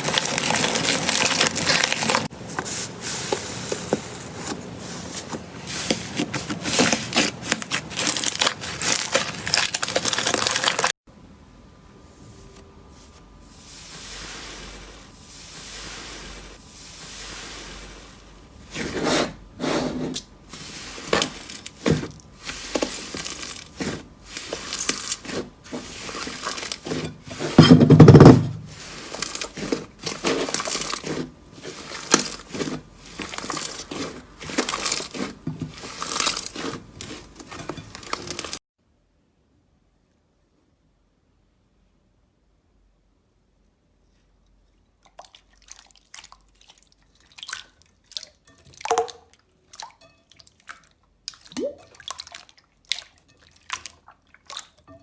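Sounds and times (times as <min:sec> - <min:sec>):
slime squishing: 0:00.0 - 0:03.2, 0:04.7 - 0:10.9, 0:28.7 - 0:38.6.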